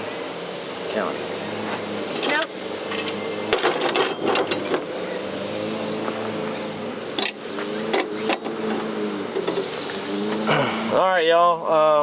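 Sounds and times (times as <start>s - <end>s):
steady engine hum: 0.0s - 12.0s
metal knocks and clatters: 1.8s - 5.0s, 7.1s - 10.4s.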